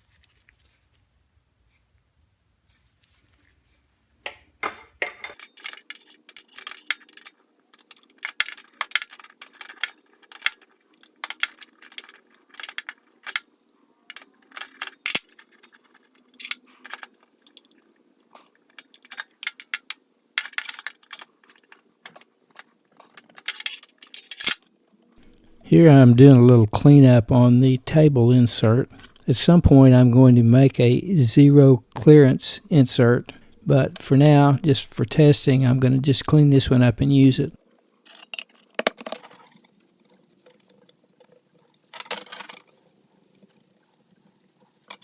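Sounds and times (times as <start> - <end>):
metal wrenches clinking on metal: 4.6 - 25.6.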